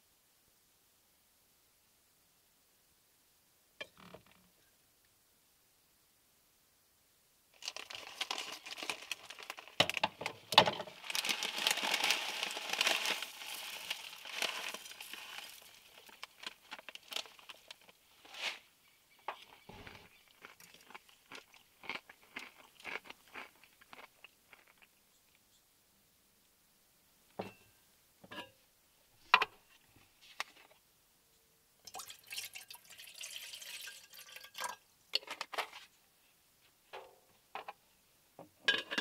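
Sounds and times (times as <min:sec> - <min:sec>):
crinkly material rustling: 0:07.6 - 0:18.7.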